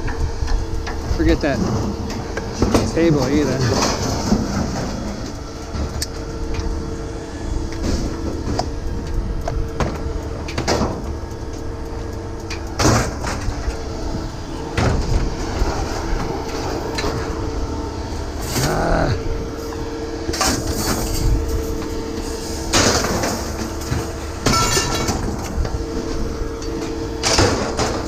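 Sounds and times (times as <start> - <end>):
low engine-like hum: 0.0 - 28.0
scrap metal knocks and clanks: 22.7 - 25.5.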